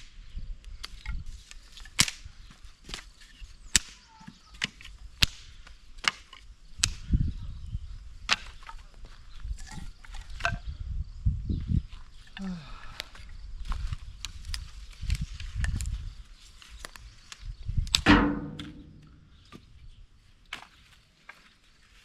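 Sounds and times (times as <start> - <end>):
wind rumbling on microphone: 0.0 - 2.7, 6.5 - 20.2.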